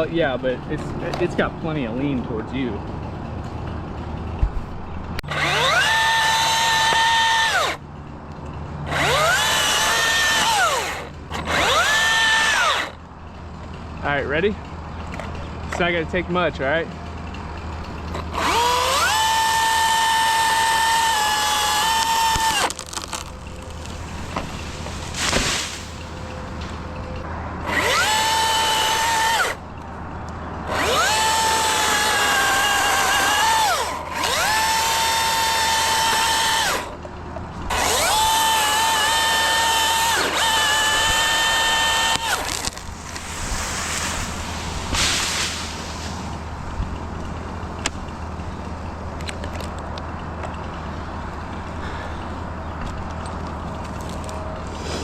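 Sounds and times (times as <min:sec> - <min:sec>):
chainsaw cutting wood: 0:05.3 - 0:07.8, 0:08.9 - 0:13.0, 0:18.1 - 0:26.0, 0:27.7 - 0:29.6, 0:30.7 - 0:36.9, 0:37.7 - 0:43.4.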